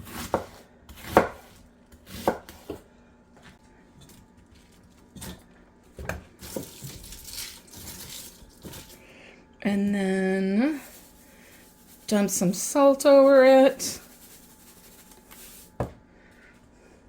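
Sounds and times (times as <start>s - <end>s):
knife chopping cabbage: 0.0s - 2.8s.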